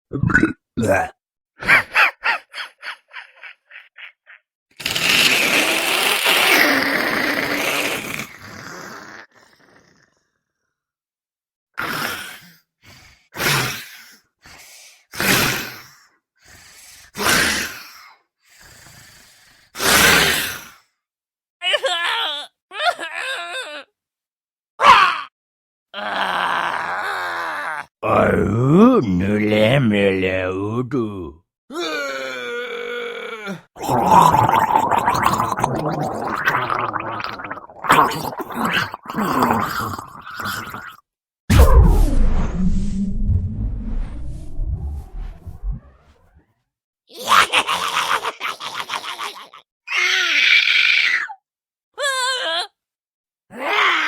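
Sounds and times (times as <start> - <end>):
gargling creature growl: 0.1 - 1.2, 28.0 - 29.5, 33.2 - 43.2
gargled grunts: 0.1 - 1.8, 28.0 - 29.1, 33.1 - 41.8
creature hissing exhales: 4.8 - 10.0.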